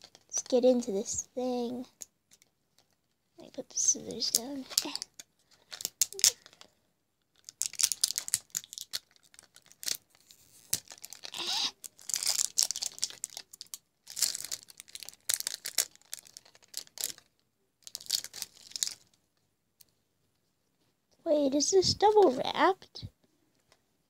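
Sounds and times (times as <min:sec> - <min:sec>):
plastic wrapping crinkling: 0:02.3 - 0:19.2.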